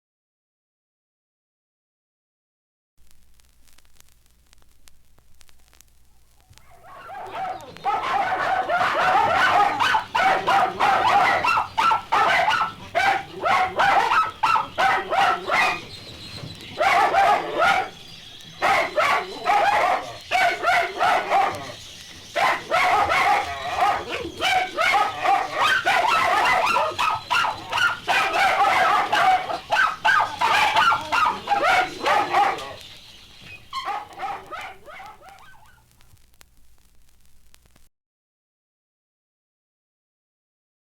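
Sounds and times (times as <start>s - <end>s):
dogs barking and yipping: 6.6s - 35.9s.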